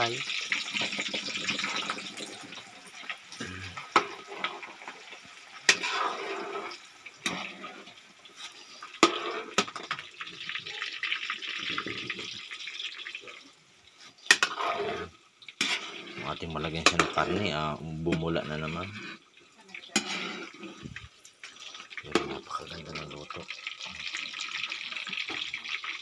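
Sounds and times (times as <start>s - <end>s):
water running and splashing: 0.0s - 26.0s
metal cooking pot clanking: 14.3s - 14.7s, 16.8s - 17.5s.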